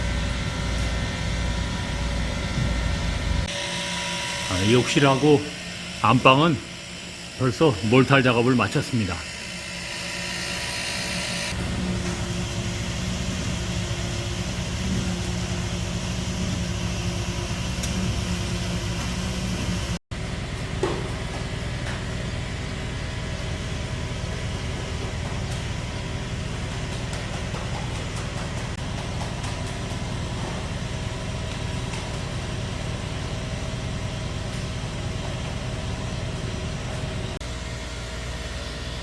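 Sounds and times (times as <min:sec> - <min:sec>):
pump truck engine running: 0:11.5 - 0:37.8.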